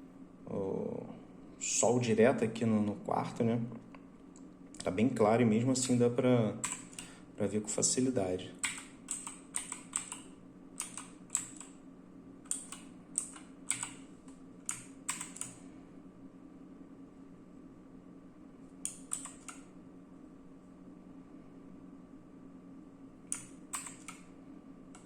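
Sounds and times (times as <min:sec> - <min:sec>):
faint low hum: 0:00.0 - 0:25.0
mechanical keyboard key presses: 0:06.6 - 0:07.1, 0:08.6 - 0:11.7, 0:12.5 - 0:14.0, 0:14.7 - 0:15.6, 0:18.9 - 0:19.6, 0:23.3 - 0:24.2.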